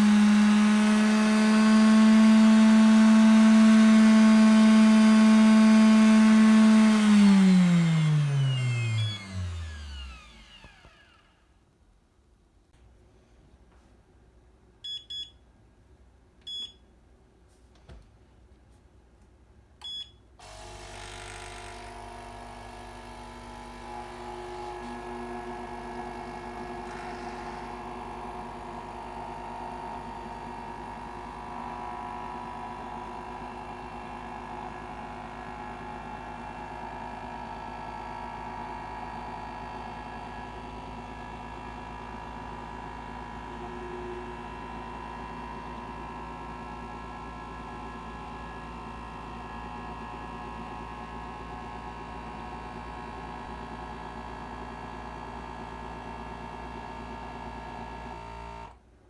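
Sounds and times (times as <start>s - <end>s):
blender motor running: 0.0s - 11.4s, 20.4s - 58.8s
short beeps: 14.8s - 15.4s, 16.5s - 16.8s.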